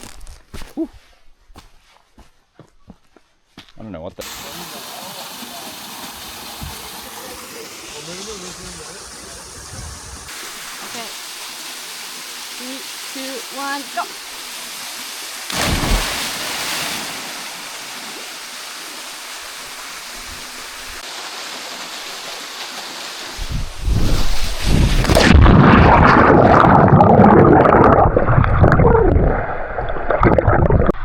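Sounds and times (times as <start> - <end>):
waterfall rushing: 4.2 - 23.4
water churning and splashing: 4.2 - 31.0.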